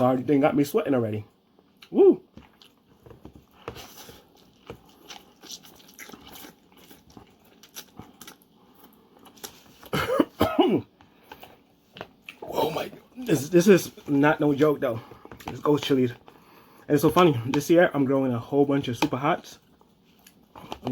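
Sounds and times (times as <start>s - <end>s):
person chewing: 1.6s - 10.0s, 19.6s - 20.9s
person coughing: 9.8s - 10.9s.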